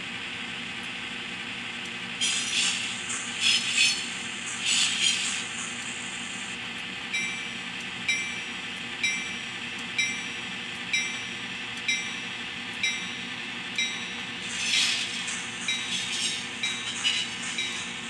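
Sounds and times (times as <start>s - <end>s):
locomotive bell ringing: 7.1s - 18.0s.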